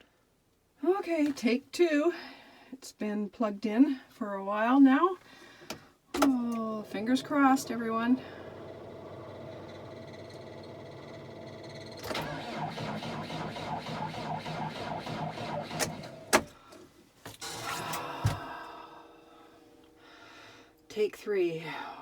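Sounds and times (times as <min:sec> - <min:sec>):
tractor engine cranking: 0:06.2 - 0:18.5
steady hum: 0:17.5 - 0:22.0.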